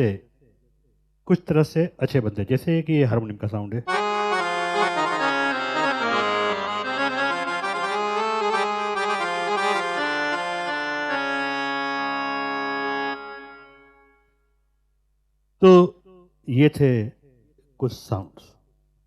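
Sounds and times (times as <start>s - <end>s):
keyboard harmonium melody and chords: 3.9s - 14.6s.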